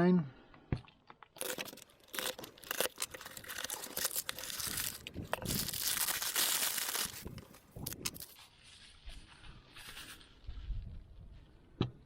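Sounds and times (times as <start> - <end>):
packing material crinkling: 1.3 - 8.4.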